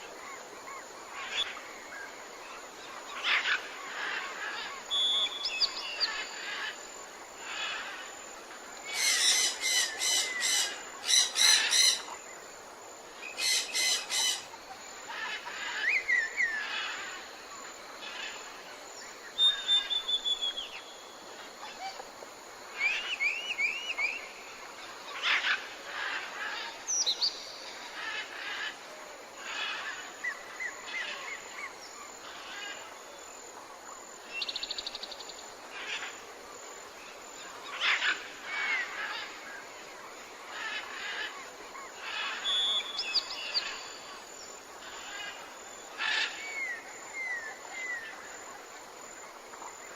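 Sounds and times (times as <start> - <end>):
soft steady hiss: 0.0 - 49.9
wild birds calling and singing: 8.8 - 12.4, 13.2 - 17.3, 37.4 - 48.4.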